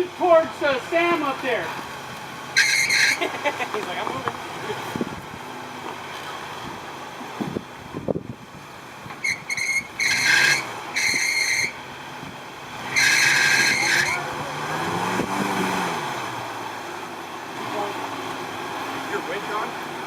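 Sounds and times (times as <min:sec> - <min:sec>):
engine revving: 0:00.0 - 0:08.3, 0:09.0 - 0:20.0
tyres squealing against rock: 0:02.5 - 0:05.0, 0:09.2 - 0:11.8, 0:12.8 - 0:16.3.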